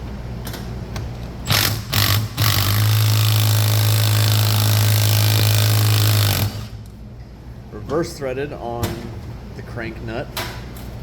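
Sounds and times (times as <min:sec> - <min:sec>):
impact wrench rattling: 0:01.5 - 0:06.8.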